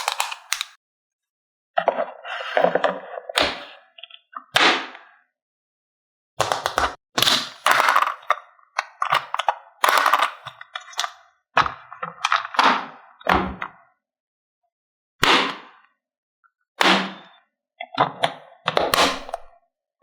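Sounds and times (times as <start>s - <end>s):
plastic toy pieces clattering: 0.0s - 0.8s, 7.6s - 8.4s, 9.0s - 11.0s.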